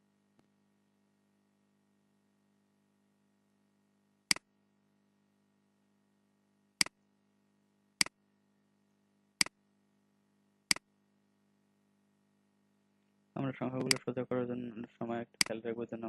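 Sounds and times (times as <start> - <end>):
faint steady hum: 0.0 - 16.0
computer mouse clicking: 13.8 - 14.0.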